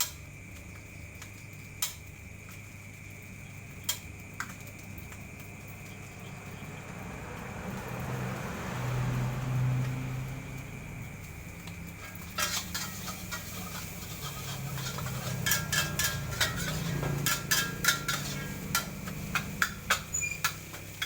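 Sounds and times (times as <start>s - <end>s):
metal spatula clanking on wok: 12.0s - 21.0s.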